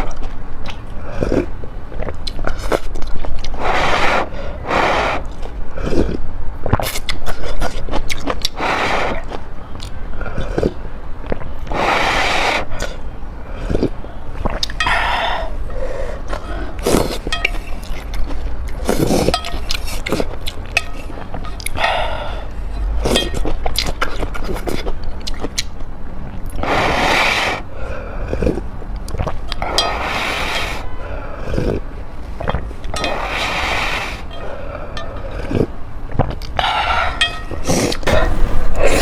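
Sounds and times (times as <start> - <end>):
chewing with wet clicks: 0.0 - 3.6, 5.3 - 8.6, 9.2 - 11.5, 13.6 - 14.9, 16.3 - 21.9, 22.8 - 26.6, 28.3 - 29.9
utensils clinking: 17.2 - 18.0, 19.2 - 22.0.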